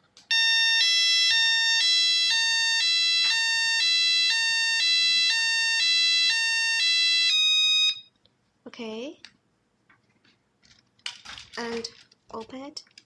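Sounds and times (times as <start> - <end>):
two-tone electronic siren: 0.3 - 8.1.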